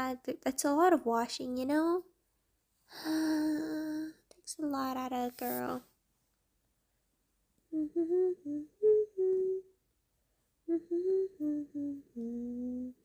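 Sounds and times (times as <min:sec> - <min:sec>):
woman humming a tune: 0:07.7 - 0:09.7, 0:10.7 - 0:13.0.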